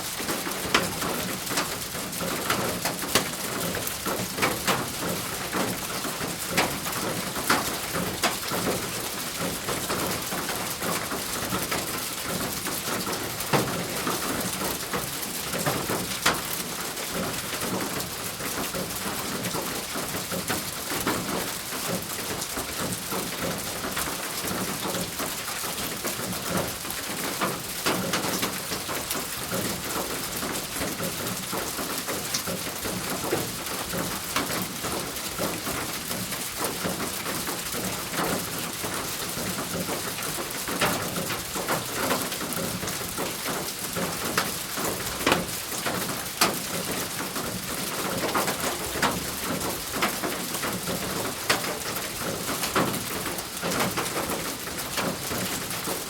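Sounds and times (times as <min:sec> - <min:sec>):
rain on a thin roof: 0:00.0 - 0:56.0.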